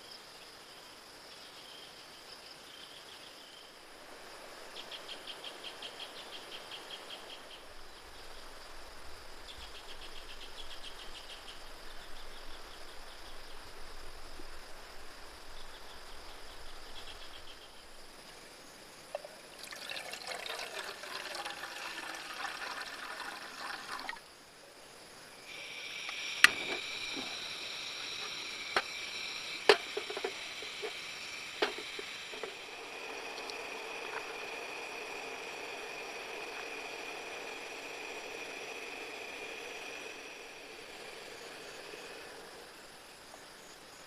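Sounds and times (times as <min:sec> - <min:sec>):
steady high-pitched hum: 0:03.0 - 0:44.0
water pouring: 0:19.1 - 0:24.2, 0:26.3 - 0:42.7
sharp clicks and knocks: 0:26.0 - 0:27.4, 0:29.6 - 0:31.0, 0:31.6 - 0:32.6.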